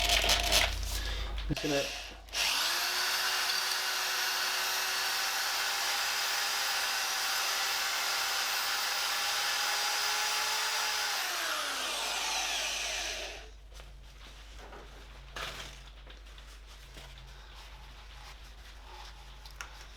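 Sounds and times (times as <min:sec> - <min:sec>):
electric drill whining: 0:00.0 - 0:13.5.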